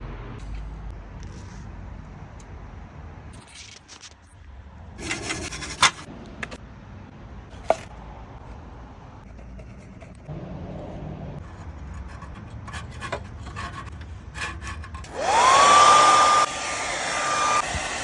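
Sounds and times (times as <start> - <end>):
low steady rumble: 4.4 - 15.1
scraping on exhaust pipe: 5.0 - 6.6, 9.2 - 15.1.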